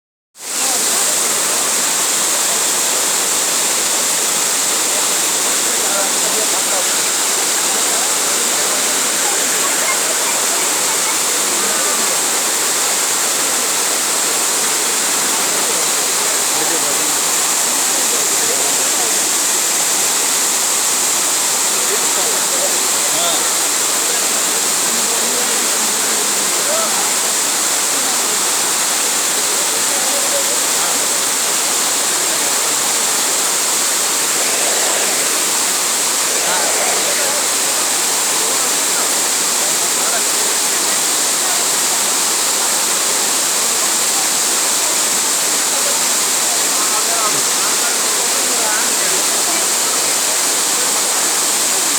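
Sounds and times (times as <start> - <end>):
waterfall rushing: 0.4 - 51.2.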